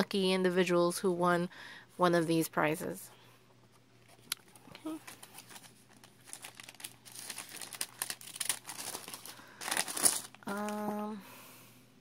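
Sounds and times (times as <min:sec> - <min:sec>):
snack packaging crinkling: 0:04.1 - 0:10.8.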